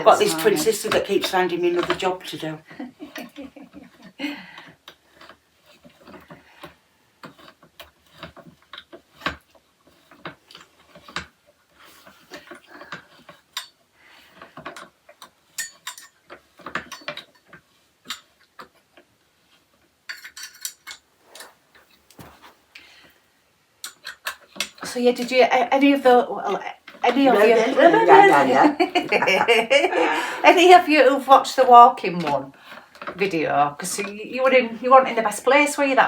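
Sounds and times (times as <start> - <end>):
parts clicking and knocking: 12.0 - 19.1, 23.8 - 24.9.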